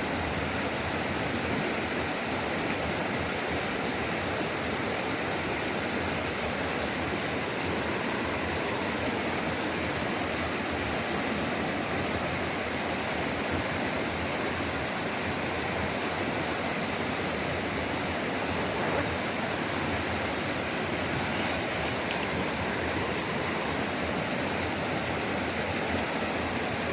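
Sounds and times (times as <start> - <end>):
water rushing over rock: 5.6 - 26.9.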